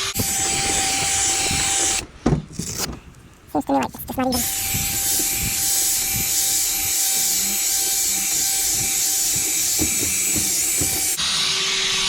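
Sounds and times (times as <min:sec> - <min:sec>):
drill motor whine: 0:00.0 - 0:02.0, 0:04.4 - 0:12.0
sanding pad rubbing hiss: 0:04.6 - 0:11.2.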